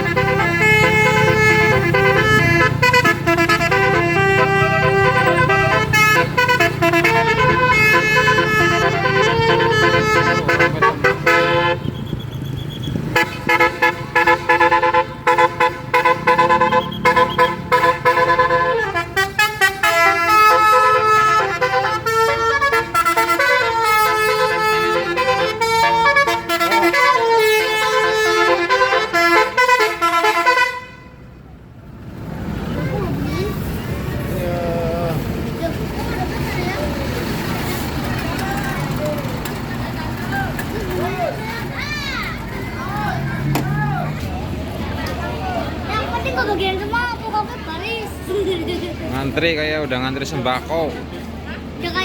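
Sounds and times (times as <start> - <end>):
bus horn playing a melody: 0.0 - 12.0, 13.0 - 31.3
low engine rumble: 0.0 - 52.0.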